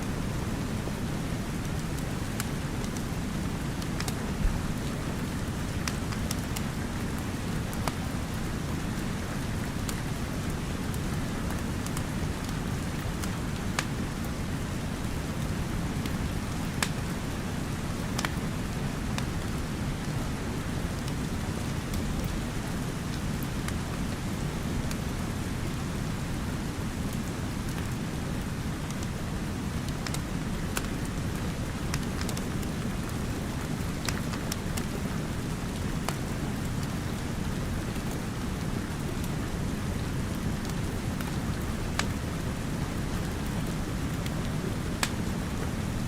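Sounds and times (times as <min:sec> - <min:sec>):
steady rain: 0:00.0 - 0:46.0
wood fire crackling and popping: 0:03.8 - 0:04.8, 0:05.7 - 0:08.0, 0:09.6 - 0:13.9, 0:16.0 - 0:17.3, 0:18.1 - 0:18.5, 0:29.8 - 0:35.0, 0:40.4 - 0:45.6.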